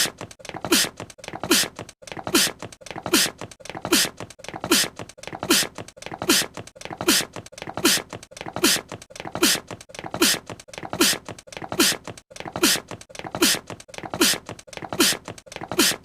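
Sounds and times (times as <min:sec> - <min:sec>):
cartoon voice sneeze: 0:11.0 - 0:11.2, 0:15.0 - 0:16.0.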